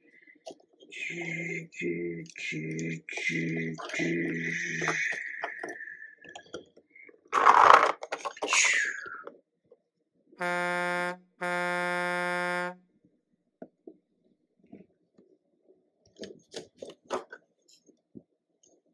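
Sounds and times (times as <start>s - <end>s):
truck horn honks: 10.4s - 12.8s.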